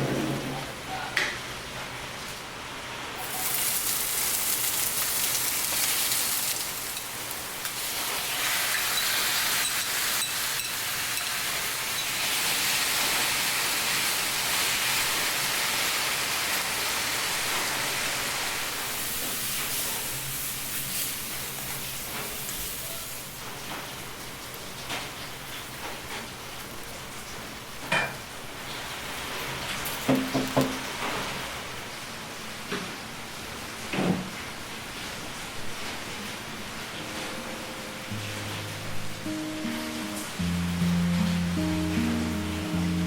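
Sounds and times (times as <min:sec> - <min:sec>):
steady rain falling: 0:02.1 - 0:08.8, 0:11.8 - 0:43.0.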